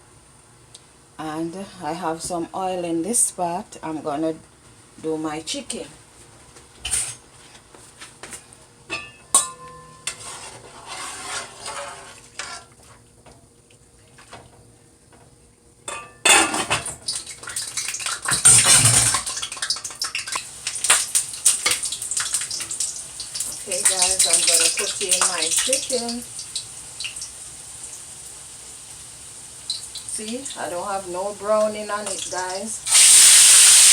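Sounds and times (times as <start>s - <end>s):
pots and pans clattering: 8.9s - 12.8s, 15.9s - 20.4s.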